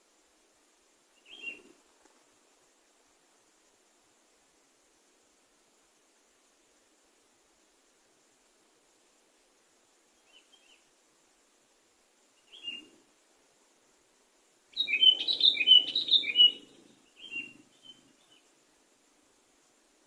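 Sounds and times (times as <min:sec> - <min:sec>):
bulbul singing: 0:14.7 - 0:18.4.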